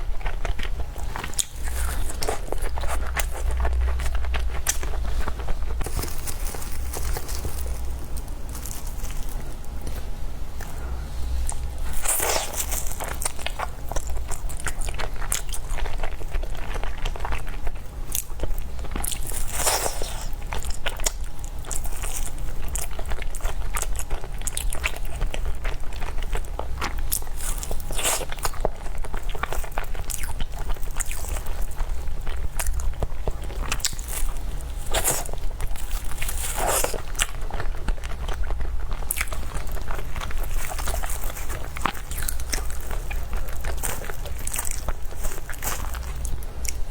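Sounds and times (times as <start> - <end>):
person biting and chewing food: 0.2 - 22.9, 32.2 - 46.9.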